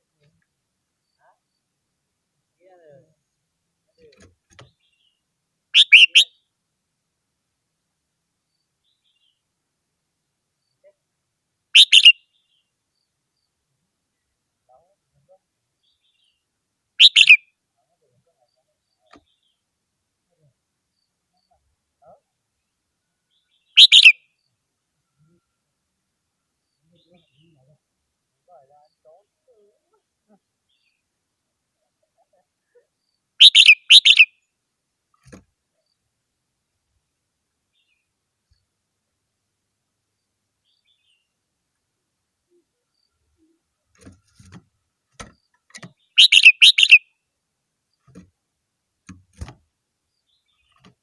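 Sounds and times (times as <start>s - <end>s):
bulbul warbling song: 5.8s - 6.4s, 11.8s - 12.2s, 17.0s - 17.4s, 23.7s - 24.2s, 33.4s - 34.3s, 45.7s - 47.0s.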